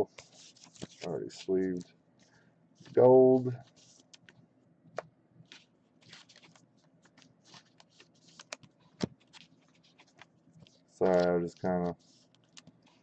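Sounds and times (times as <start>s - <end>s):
trading cards rustling: 0.1s - 4.4s, 5.4s - 13.0s.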